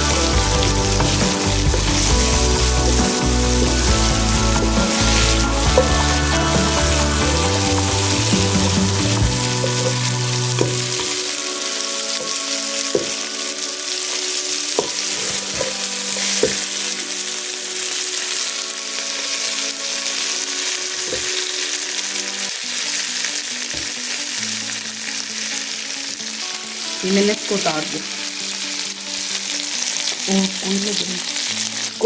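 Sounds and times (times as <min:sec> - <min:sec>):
food sizzling in oil: 0:00.0 - 0:32.0.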